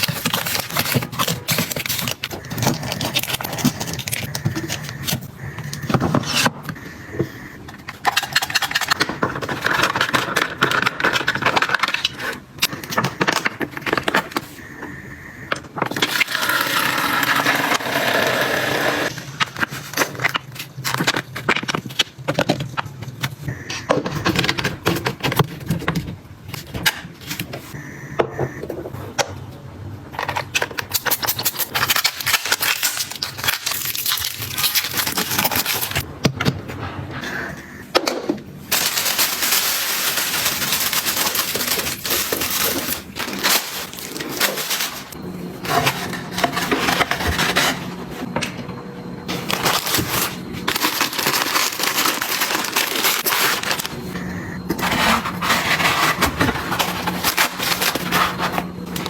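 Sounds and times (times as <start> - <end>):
packaging crinkling: 0.0 - 6.5, 30.2 - 36.1, 38.7 - 48.0, 49.3 - 59.0.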